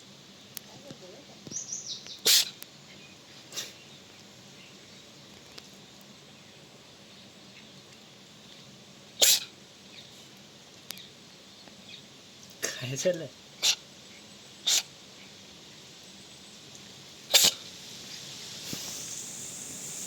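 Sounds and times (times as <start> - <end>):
cat sneezing: 2.2 - 2.6, 9.2 - 9.5, 17.3 - 17.6.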